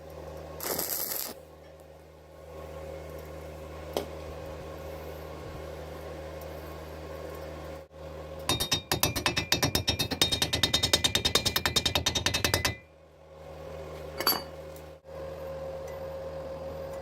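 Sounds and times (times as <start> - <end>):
hammer tapping on steel tube: 8.5 - 12.9
metal clink: 14.2 - 14.6.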